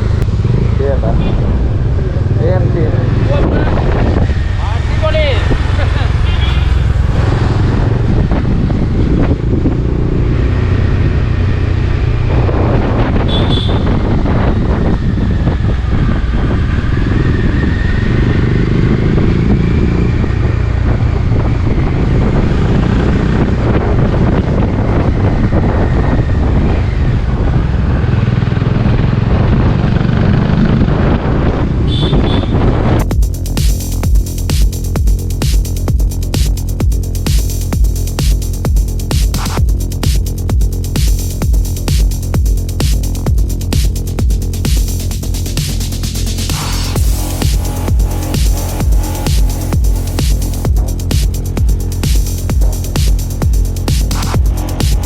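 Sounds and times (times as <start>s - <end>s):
motorcycle engine running: 0.0s - 55.0s
wind rush on microphone: 0.0s - 55.0s
music: 33.0s - 55.0s.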